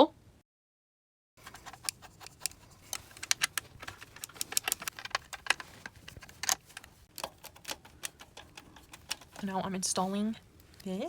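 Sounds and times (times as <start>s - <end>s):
computer parts clicking: 1.4s - 9.8s.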